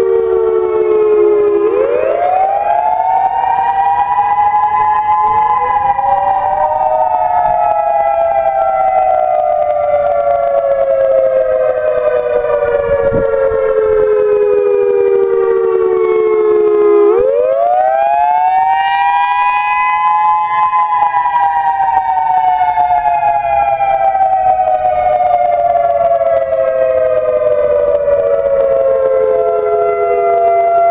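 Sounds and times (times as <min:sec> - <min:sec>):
tornado warning siren wailing: 0:00.0 - 0:30.9.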